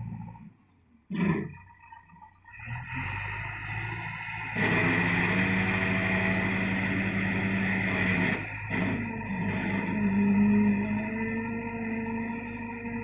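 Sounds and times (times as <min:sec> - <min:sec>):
backhoe engine revving: 0:00.0 - 0:13.0.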